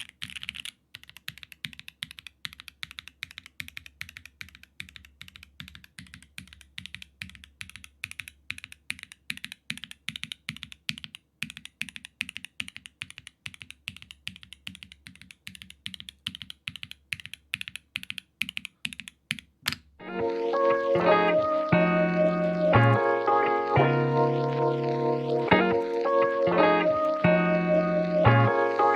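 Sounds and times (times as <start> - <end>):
mechanical keyboard typing: 0.0 - 19.9.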